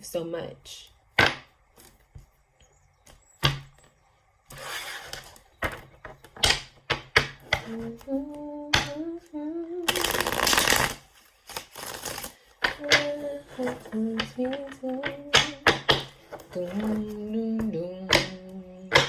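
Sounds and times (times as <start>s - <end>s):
cards slapping and tapping: 5.1s - 9.0s, 9.9s - 19.0s
woman humming: 7.6s - 10.5s, 12.8s - 15.7s, 16.6s - 19.0s
deck of cards riffling: 9.8s - 14.7s.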